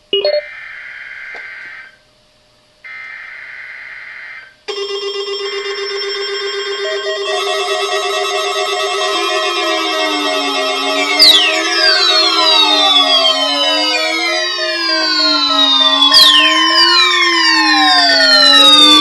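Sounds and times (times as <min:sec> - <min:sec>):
loud music: 0:07.4 - 0:19.0
warbling digital data bursts: 0:09.3 - 0:19.0.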